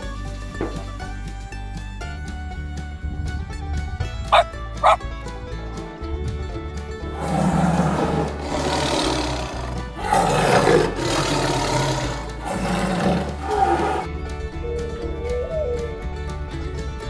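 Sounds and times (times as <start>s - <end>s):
background music: 0.0s - 17.0s
animal giving long rough calls: 4.3s - 5.0s.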